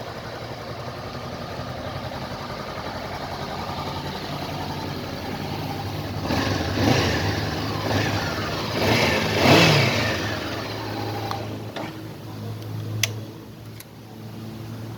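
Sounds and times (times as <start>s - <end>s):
motorcycle engine idling and revving: 0.0s - 14.9s
sharp click: 12.6s - 13.9s.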